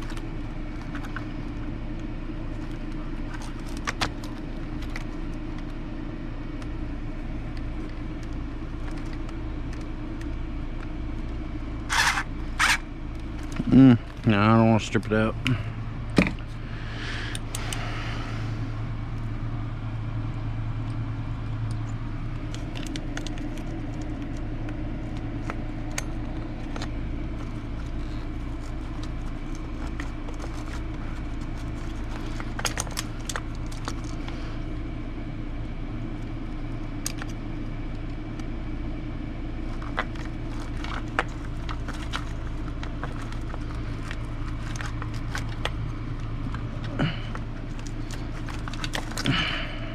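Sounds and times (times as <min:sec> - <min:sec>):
steady low hum: 0:00.0 - 0:49.9
hand tools clicking and rattling: 0:11.9 - 0:12.8, 0:25.9 - 0:34.2, 0:39.7 - 0:45.8, 0:46.5 - 0:49.5.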